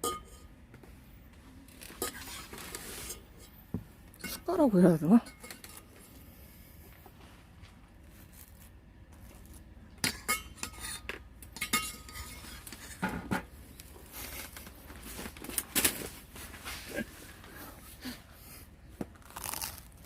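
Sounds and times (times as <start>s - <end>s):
cutlery clinking against dishes: 0.0s - 0.5s, 10.0s - 13.1s.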